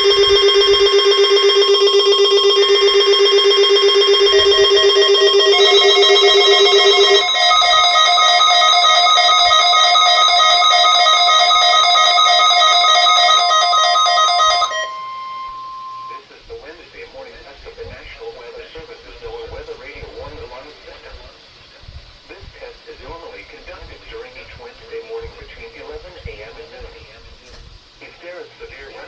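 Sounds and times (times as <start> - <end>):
fast pulsing electronic beeps: 0.0 - 16.2
low warbling alarm: 0.0 - 16.2.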